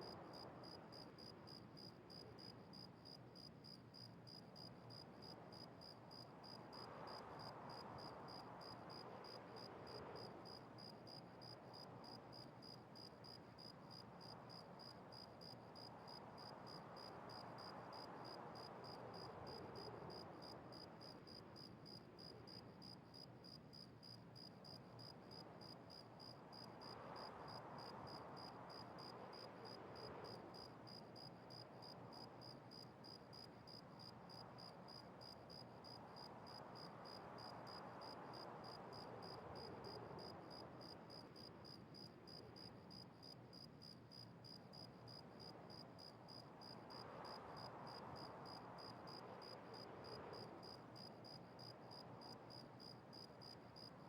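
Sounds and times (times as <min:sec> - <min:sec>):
cricket chirping: 0:00.0 - 0:54.0
soft background hiss: 0:00.0 - 0:54.0.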